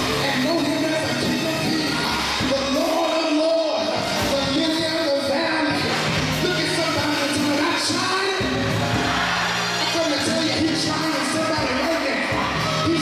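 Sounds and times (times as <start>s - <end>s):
live instruments: 0.0s - 13.0s.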